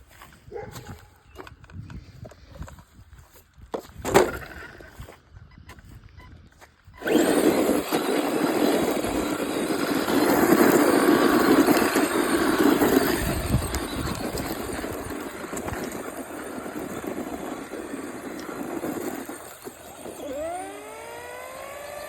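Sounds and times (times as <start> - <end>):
radio-controlled car motor and tyres: 4.3 - 22.0.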